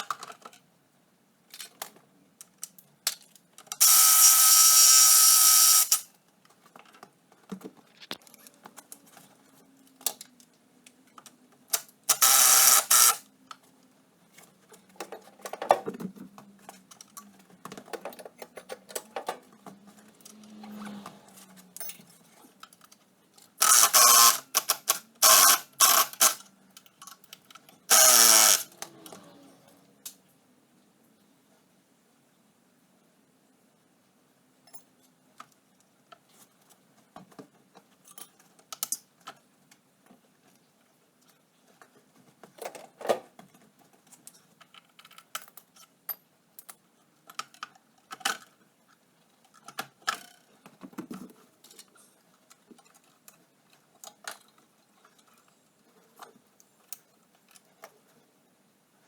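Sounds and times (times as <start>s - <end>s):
power tool whine: 3.8s - 6.0s, 12.1s - 13.2s, 23.6s - 24.4s, 27.9s - 28.7s.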